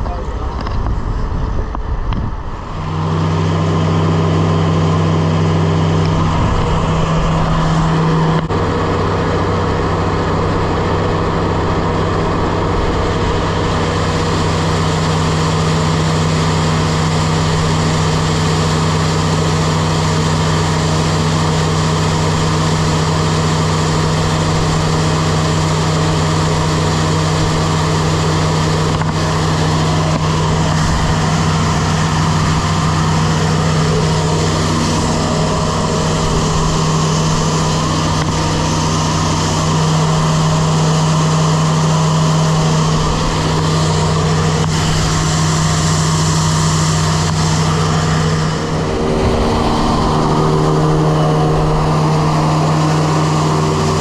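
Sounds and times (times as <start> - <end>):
machine drone with low hum: 48.4 - 54.0.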